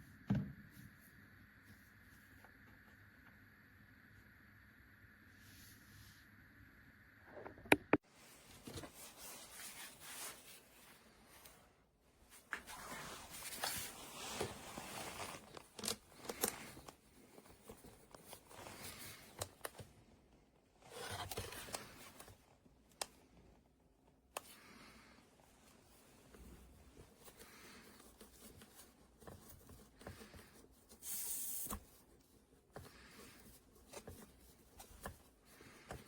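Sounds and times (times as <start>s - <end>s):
rustling and scraping: 8.1s - 20.0s, 20.8s - 22.5s.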